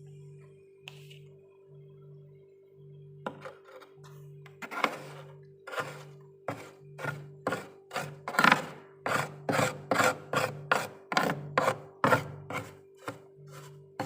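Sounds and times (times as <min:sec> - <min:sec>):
steady low hum: 0:00.0 - 0:14.0
spoon scraping frost: 0:04.6 - 0:14.0.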